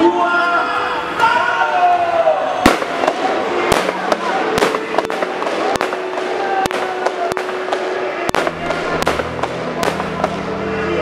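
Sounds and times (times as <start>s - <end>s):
fireworks bangs: 2.6s - 10.6s
steady musical tones: 2.7s - 11.0s.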